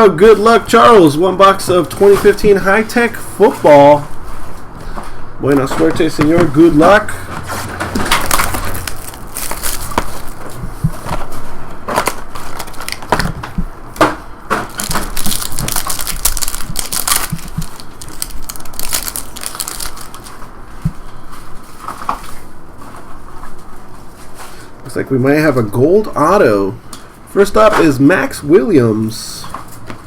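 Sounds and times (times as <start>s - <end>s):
plastic wrapping crinkling and tearing: 7.8s - 13.6s, 14.5s - 24.4s.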